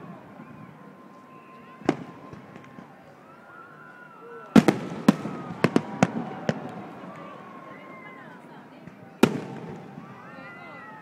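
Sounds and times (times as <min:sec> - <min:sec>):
firework bangs: 0:04.6 - 0:06.8, 0:09.2 - 0:10.2.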